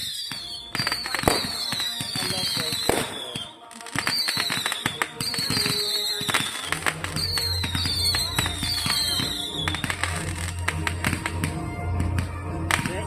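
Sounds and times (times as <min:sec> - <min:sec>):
falling firework whistles: 0:00.0 - 0:11.5
fireworks popping and crackling: 0:00.0 - 0:13.0
music with low bass: 0:06.7 - 0:13.0.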